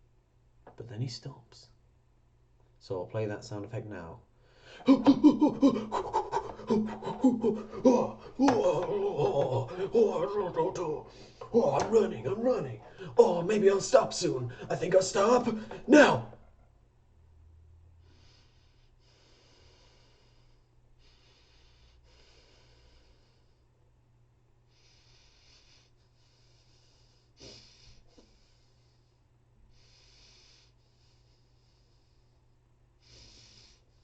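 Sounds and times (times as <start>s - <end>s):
man breathing heavily: 4.4s - 16.5s, 18.0s - 23.7s, 24.7s - 34.0s.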